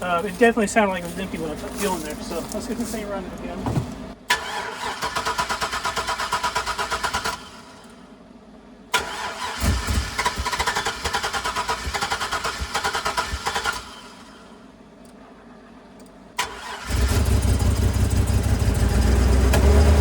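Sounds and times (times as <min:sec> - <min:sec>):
low thuds: 0:00.0 - 0:04.2
engine cranking on starter: 0:03.9 - 0:08.0, 0:08.9 - 0:14.5, 0:16.4 - 0:20.0.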